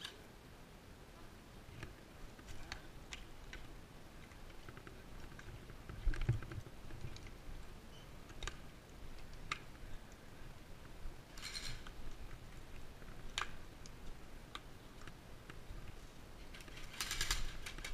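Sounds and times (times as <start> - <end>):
sharp clicks and light knocks: 1.7 - 7.4.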